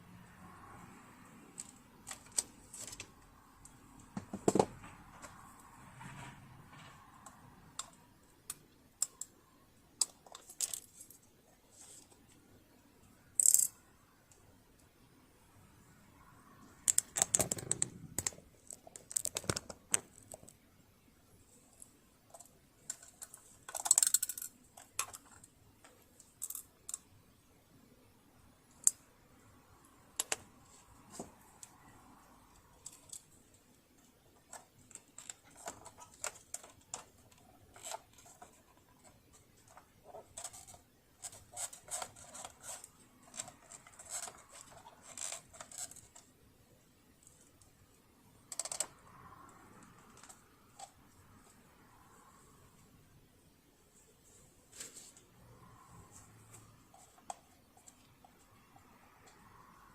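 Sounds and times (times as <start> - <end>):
small clicks of metal parts: 6.7 - 9.4, 10.0 - 11.2, 13.4 - 14.4, 21.7 - 27.1, 32.7 - 33.4, 34.4 - 46.3, 48.5 - 49.0.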